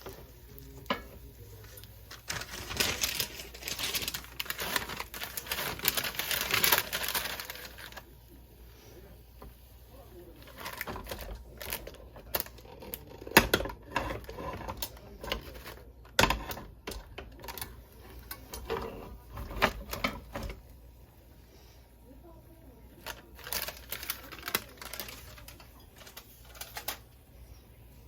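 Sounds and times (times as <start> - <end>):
camp cookware clicking and clacking: 10.5 - 20.7.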